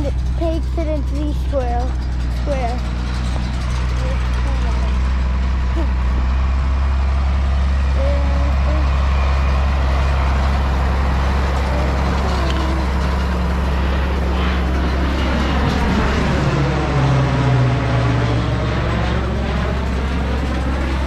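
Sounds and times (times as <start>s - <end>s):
tractor engine drone: 0.0s - 21.0s.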